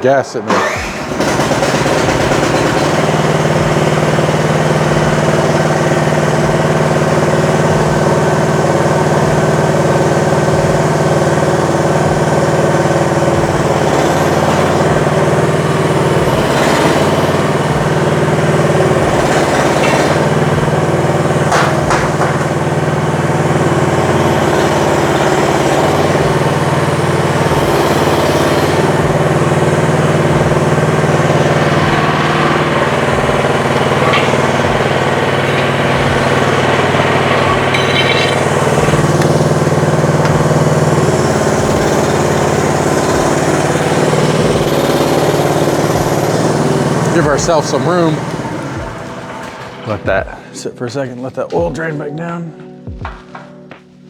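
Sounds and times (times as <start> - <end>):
gasoline engine running: 0.0 - 53.4
sharp knocks: 0.5 - 6.6, 21.4 - 22.9.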